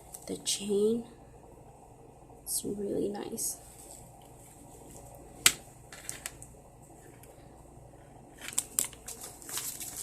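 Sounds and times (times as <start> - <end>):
soft handling rustle: 3.6 - 7.6, 8.3 - 10.0.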